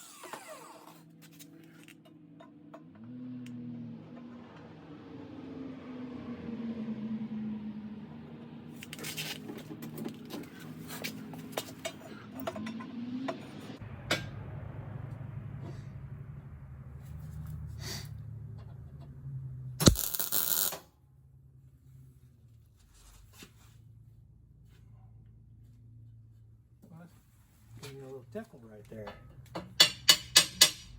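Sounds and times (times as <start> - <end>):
low hum: 13.7 - 21.5
burst of noise: 19.8 - 20.8
steady tone: 19.8 - 20.8.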